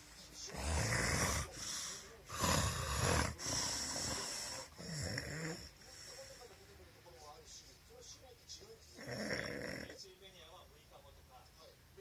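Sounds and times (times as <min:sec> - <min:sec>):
loud snoring: 0:00.5 - 0:01.6, 0:02.3 - 0:05.7, 0:09.0 - 0:10.0.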